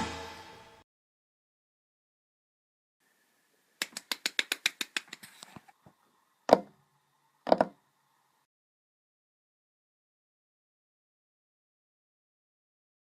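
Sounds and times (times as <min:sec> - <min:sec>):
people clapping: 0:03.8 - 0:05.3.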